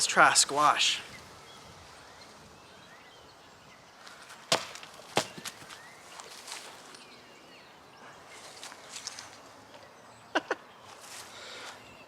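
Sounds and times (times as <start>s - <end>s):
bird chirps: 0.9s - 4.5s
cleaver chopping into squash: 4.5s - 5.6s.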